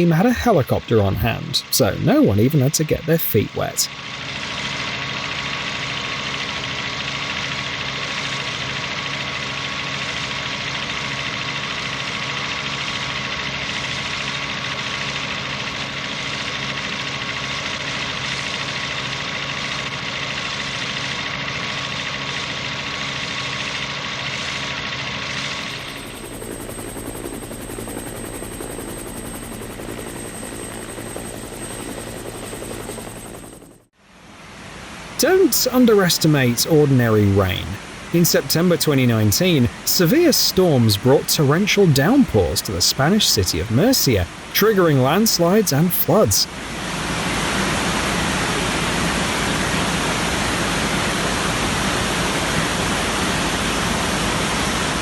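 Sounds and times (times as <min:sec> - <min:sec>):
helicopter rotor and engine: 0:00.0 - 0:33.9, 0:35.3 - 0:55.0.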